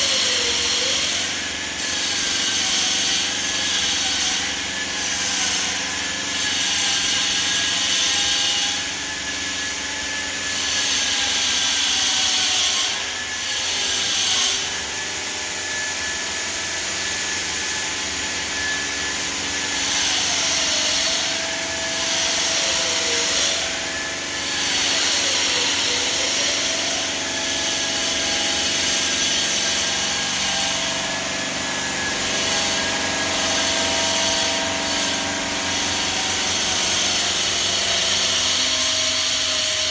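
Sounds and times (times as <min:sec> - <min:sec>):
saw blade grinding stone: 0:00.0 - 0:39.9
saw motor whine: 0:00.0 - 0:39.9.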